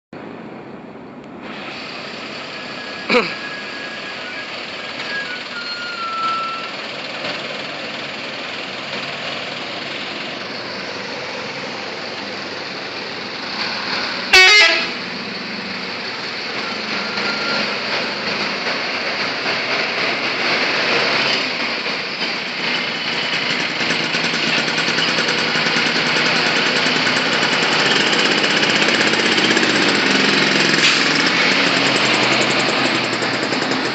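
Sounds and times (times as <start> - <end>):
bus and road noise: 0.0 - 33.9
bus horn: 2.6 - 6.7, 14.2 - 15.0.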